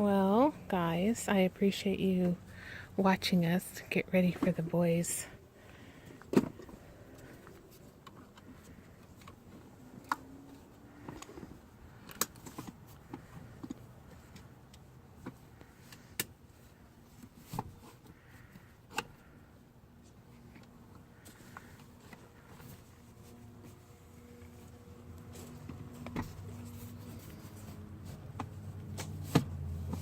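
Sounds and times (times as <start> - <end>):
faint steady background noise: 0.0 - 30.0.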